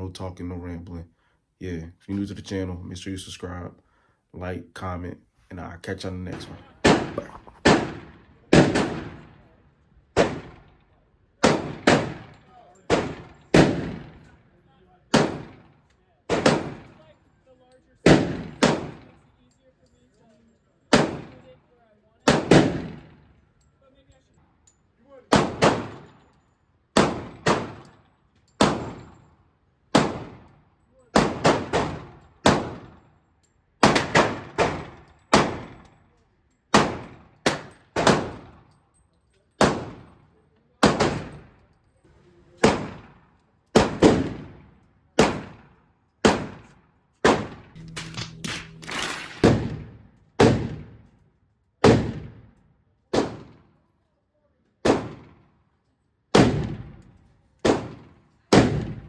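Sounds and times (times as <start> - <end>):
gunshots with echo: 6.8 - 9.3, 16.3 - 16.9, 18.1 - 19.1, 47.3 - 51.0.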